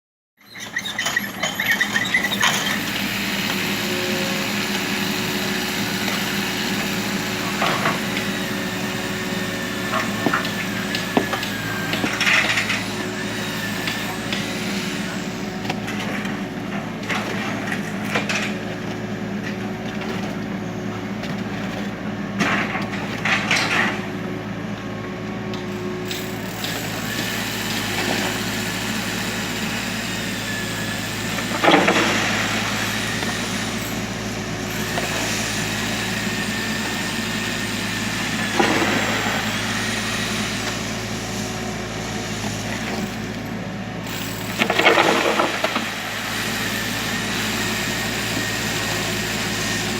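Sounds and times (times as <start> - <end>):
excavator diesel engine running: 0.5 - 49.9.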